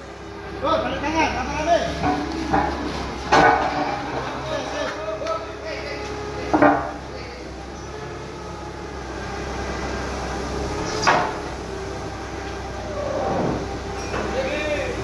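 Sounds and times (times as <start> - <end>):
steady low hum: 0.0 - 15.0
heavy machinery clanks: 1.6 - 7.9, 10.6 - 15.0.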